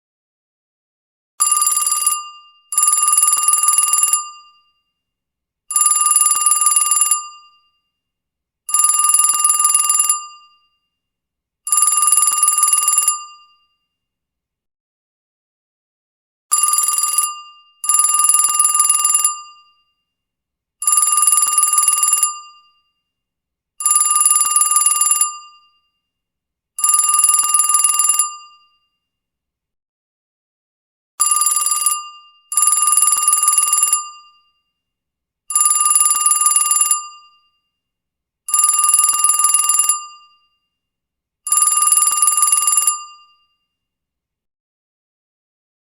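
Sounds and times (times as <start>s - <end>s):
old telephone bell ringing: 31.2s - 34.1s, 35.5s - 37.1s, 38.5s - 40.1s, 41.5s - 43.2s.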